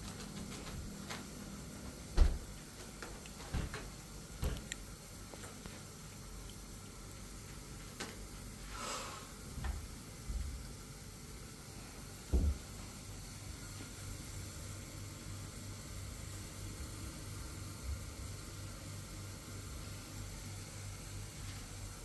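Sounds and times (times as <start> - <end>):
thud: 2.2 - 2.5, 12.3 - 12.6
faint hiss: 4.8 - 22.0.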